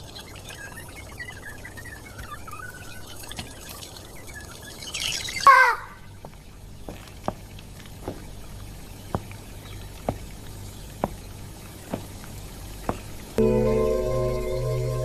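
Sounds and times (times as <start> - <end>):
water dripping: 6.2 - 15.0
music with held chord: 13.4 - 15.0.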